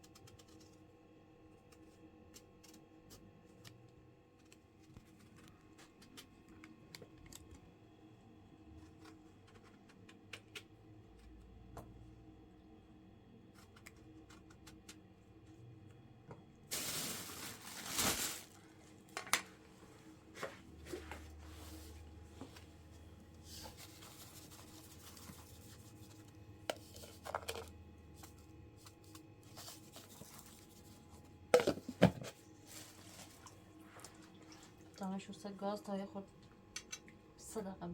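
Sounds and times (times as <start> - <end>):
rustling tearing sound: 16.7 - 18.7.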